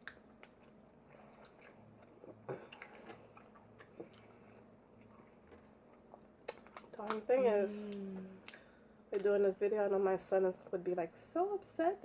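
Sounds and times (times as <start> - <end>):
faint chewing: 0.0 - 7.2.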